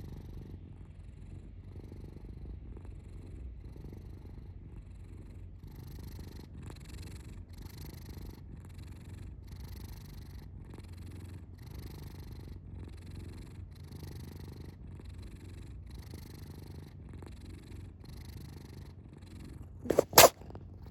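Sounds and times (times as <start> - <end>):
cat purring: 0.0 - 20.9.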